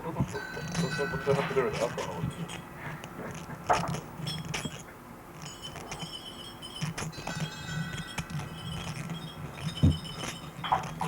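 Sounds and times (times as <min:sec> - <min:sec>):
steady low hum: 0:00.0 - 0:11.0
high clear chime tones: 0:00.4 - 0:01.7, 0:05.4 - 0:10.8.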